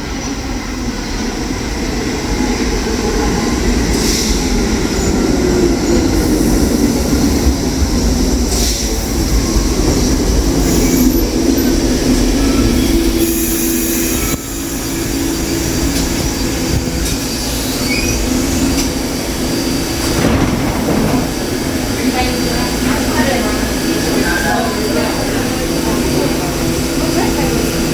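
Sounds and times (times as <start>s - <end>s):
subway train rumbling: 0.0s - 27.9s
wheel squeal: 17.4s - 18.6s.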